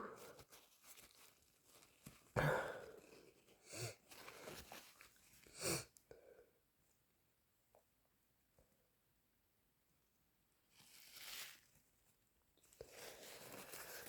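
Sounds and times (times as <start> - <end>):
person sniffling with a cold: 0.0 - 0.6, 2.3 - 4.6, 5.5 - 6.0.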